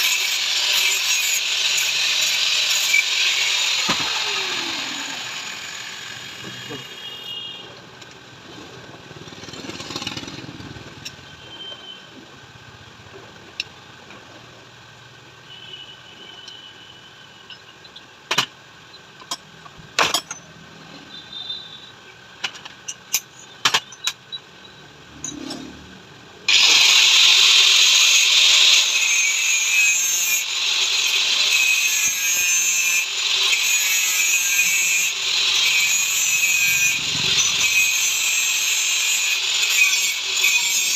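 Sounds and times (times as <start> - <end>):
power tool hissing whir: 0.0 - 7.4, 26.5 - 40.9.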